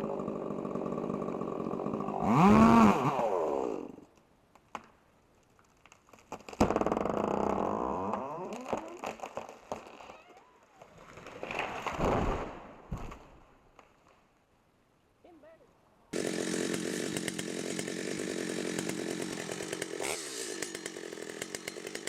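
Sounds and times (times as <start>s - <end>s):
chainsaw revving: 0.0s - 4.0s, 16.1s - 22.0s
sharp cracks: 8.1s - 14.0s.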